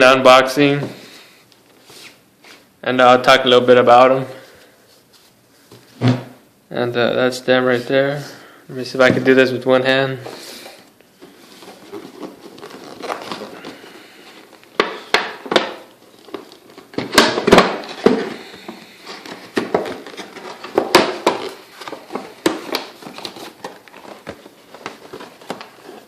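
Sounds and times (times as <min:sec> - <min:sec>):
cardboard packaging rustling: 0:10.2 - 0:26.0.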